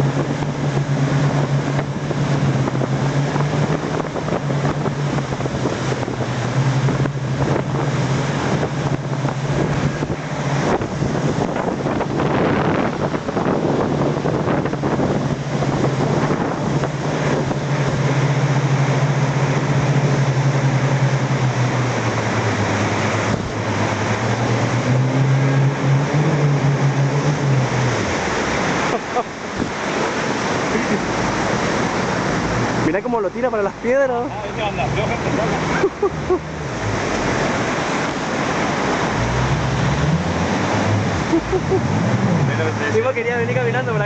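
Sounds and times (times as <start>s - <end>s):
wind on the microphone: 0.0s - 28.3s
motorboat engine running: 0.0s - 44.0s
water rushing past a hull: 0.0s - 44.0s.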